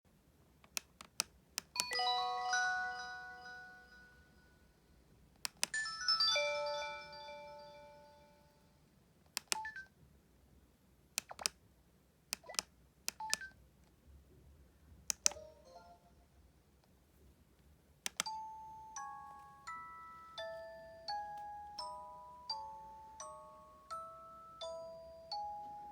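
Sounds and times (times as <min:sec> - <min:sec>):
phone key clicks: 0:05.4 - 0:05.8, 0:09.3 - 0:09.8, 0:15.1 - 0:15.4, 0:18.1 - 0:18.4.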